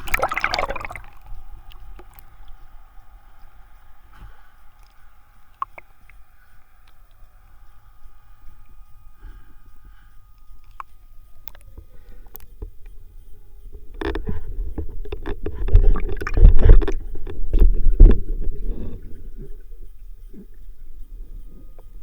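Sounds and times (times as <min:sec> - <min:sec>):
knocks and splashes: 0:00.0 - 0:01.2
water sloshing and gurgling: 0:00.0 - 0:03.5, 0:04.1 - 0:07.2, 0:14.0 - 0:19.8.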